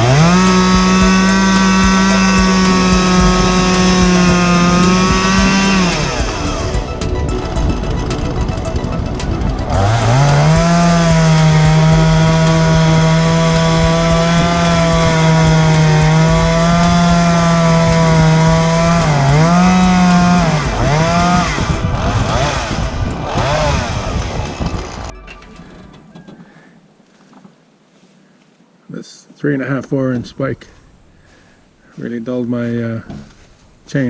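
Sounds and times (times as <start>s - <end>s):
chainsaw cutting wood: 0.0s - 26.4s.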